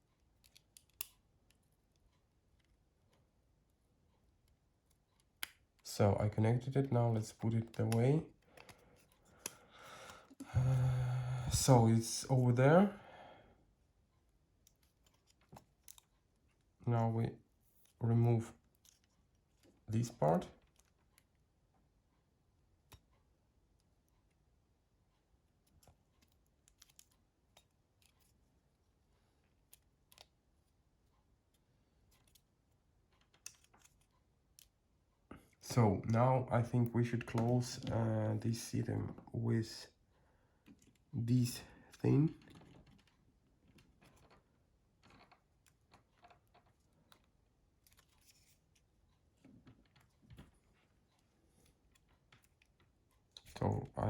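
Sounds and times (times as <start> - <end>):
plastic parts clicking and rubbing: 0.1 - 3.3, 6.6 - 10.4, 14.6 - 16.8, 18.6 - 21.4, 25.5 - 28.6, 29.4 - 34.8, 41.8 - 54.0
plastic phone parts clicking: 0.4 - 1.7, 25.6 - 28.3, 33.2 - 34.7.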